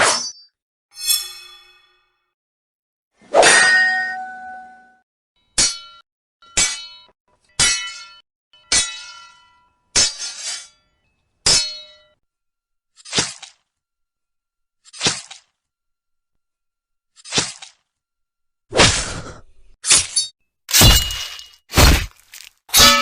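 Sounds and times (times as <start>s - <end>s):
sword blades clashing: 1.0s - 1.7s, 5.6s - 10.8s, 11.5s - 12.0s, 19.8s - 23.0s.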